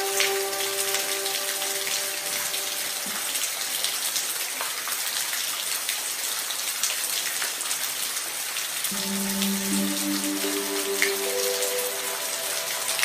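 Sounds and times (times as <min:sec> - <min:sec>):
raindrops striking close by: 0:00.0 - 0:13.0
steady rain falling: 0:00.0 - 0:13.0.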